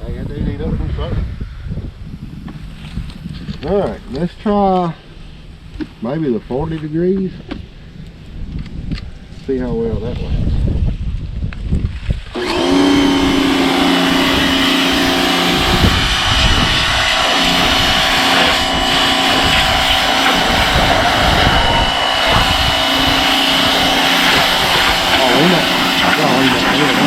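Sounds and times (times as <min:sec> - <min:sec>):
pressure washer motor whine: 0:12.3 - 0:27.0
water spraying hiss: 0:12.7 - 0:27.0.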